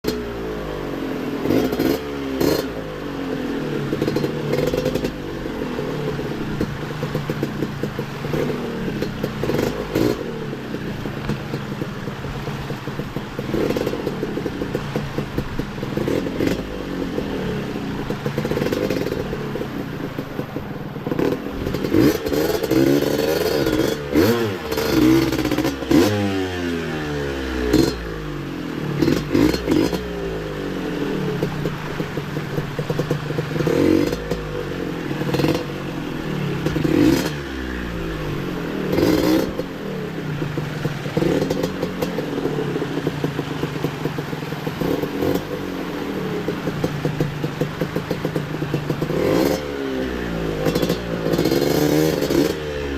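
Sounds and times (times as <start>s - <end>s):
two-stroke engine revving: 0.0s - 52.9s.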